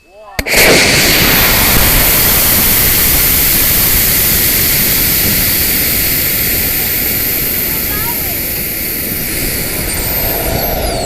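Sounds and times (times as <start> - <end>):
rocket motor rushing roar: 0.4 - 11.0.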